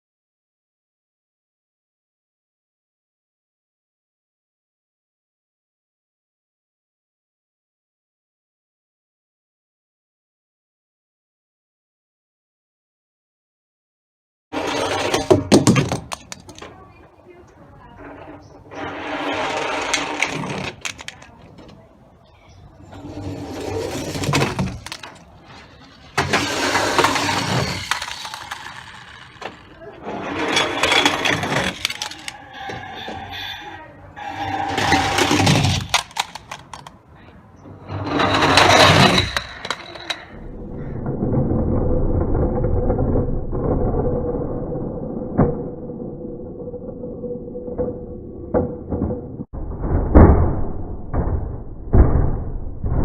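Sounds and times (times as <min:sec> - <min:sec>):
toy vehicle mechanical noise: 0:14.6 - 0:21.8, 0:22.5 - 0:37.0
toy engine sound: 0:26.2 - 0:30.0, 0:30.6 - 0:36.8.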